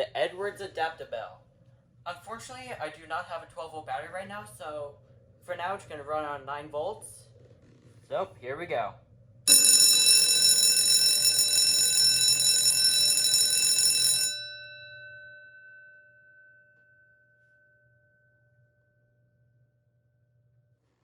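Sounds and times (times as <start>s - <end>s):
fire alarm bell ringing: 9.5s - 17.5s.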